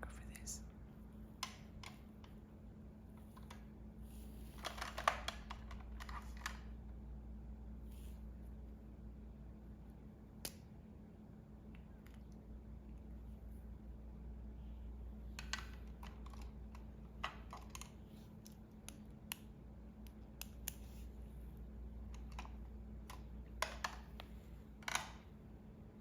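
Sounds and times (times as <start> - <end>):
faint low hum: 0.0 - 26.0
plastic pen clicks and taps: 15.4 - 20.9, 22.1 - 25.2.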